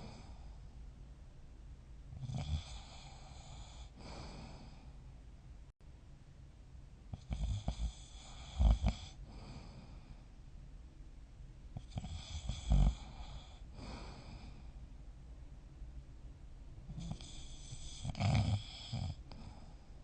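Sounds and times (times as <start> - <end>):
person snoring: 2.2 - 4.8, 7.2 - 10.1, 11.8 - 14.6, 16.9 - 19.8.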